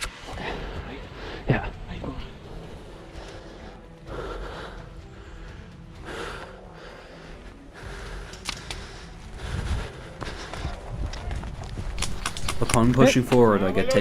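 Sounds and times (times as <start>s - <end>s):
heavy breathing: 0.2s - 12.6s
sharp clicks: 8.2s - 9.1s, 11.9s - 13.5s.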